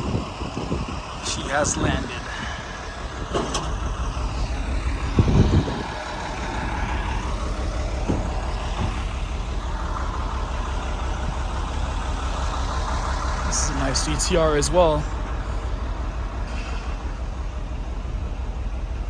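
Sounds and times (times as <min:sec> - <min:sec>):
vehicle engine rumbling: 0:00.0 - 0:19.0
heavy thud: 0:07.6 - 0:09.5.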